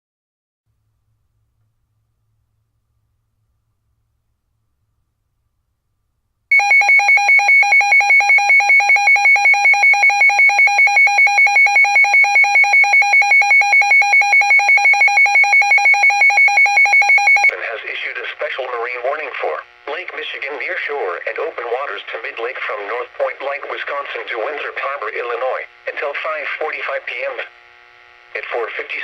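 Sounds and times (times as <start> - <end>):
rapidly pulsing electronic beep: 6.5 - 17.5.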